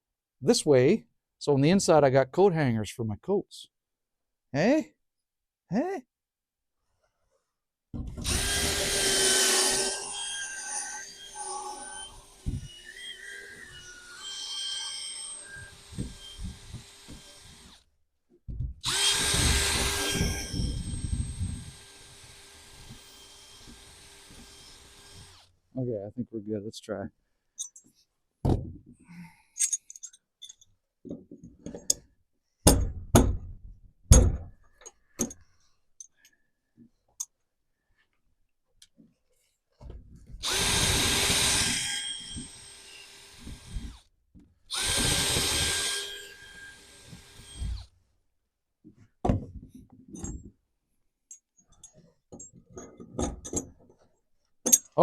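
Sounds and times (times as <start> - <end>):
power drill drilling into wood: 8.2 - 17.8, 18.8 - 25.5, 40.4 - 44.1, 44.7 - 47.9
tools and hardware clattering: 29.6 - 32.0.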